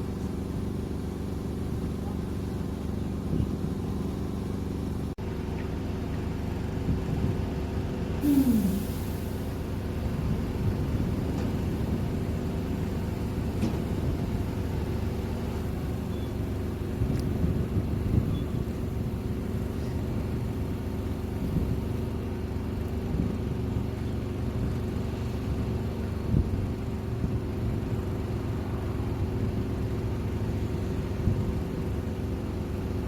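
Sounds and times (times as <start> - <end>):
heavy diesel engine running: 0.0 - 33.0
air release hiss: 8.2 - 9.5.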